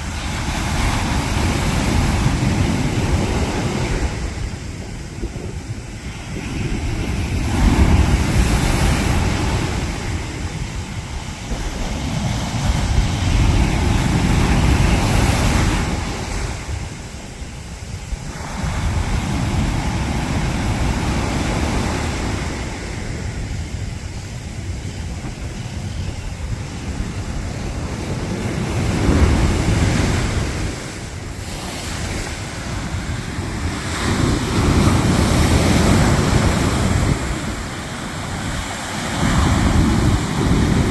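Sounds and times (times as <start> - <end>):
wind buffeting microphone: 0.0 - 40.9
surf breaking on beach: 26.4 - 40.9.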